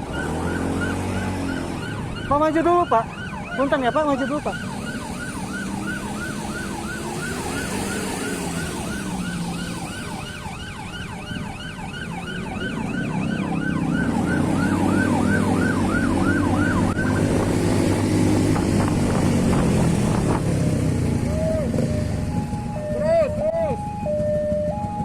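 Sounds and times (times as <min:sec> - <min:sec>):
electronic yelp siren: 0:00.0 - 0:18.1, 0:21.2 - 0:25.0
motorcycle engine: 0:00.0 - 0:25.0
wind on microphone: 0:16.8 - 0:21.1.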